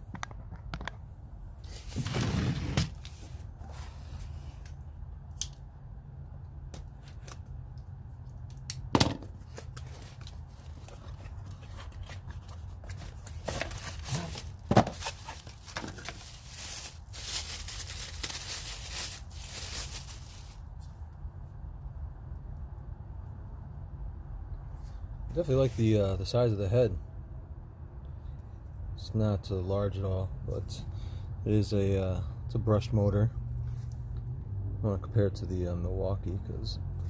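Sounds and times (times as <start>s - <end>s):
packaging rustling: 9.5s - 20.6s
cardboard packaging tearing: 9.6s - 20.6s.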